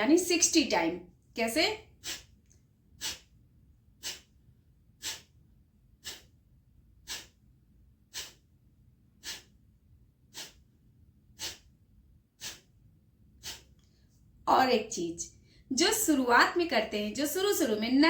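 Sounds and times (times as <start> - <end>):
sharp nasal exhalations: 1.9 - 2.4, 3.0 - 3.4, 4.0 - 4.4, 5.0 - 5.4, 6.0 - 6.4, 7.0 - 7.4, 8.1 - 8.5, 9.2 - 9.6, 10.3 - 10.7, 11.4 - 11.8, 12.4 - 12.7, 13.4 - 13.9.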